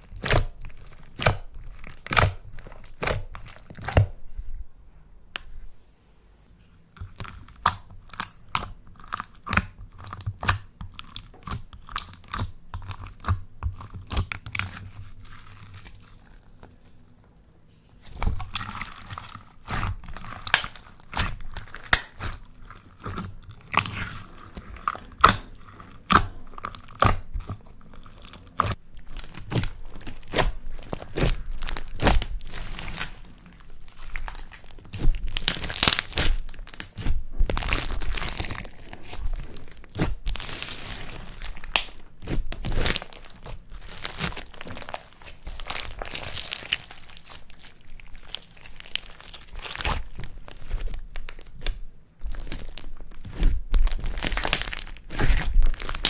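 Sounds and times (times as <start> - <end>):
slime squished by hand: 0.0 - 4.3, 17.9 - 56.0
crinkly rustling: 14.6 - 56.0.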